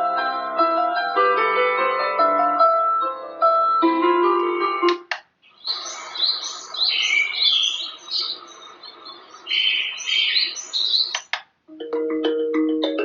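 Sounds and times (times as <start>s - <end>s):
recorded birdsong chirps: 5.2s - 11.5s.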